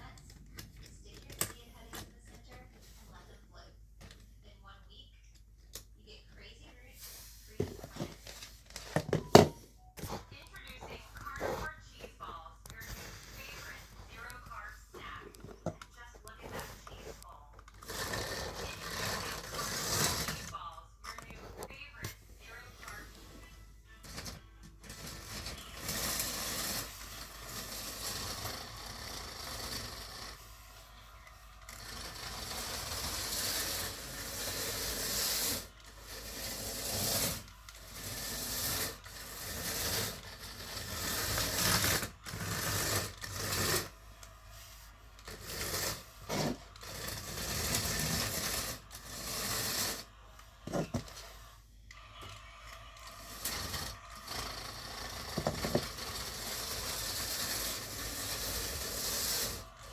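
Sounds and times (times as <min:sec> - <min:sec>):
model train rattling on rails: 0:53.2 - 0:59.6.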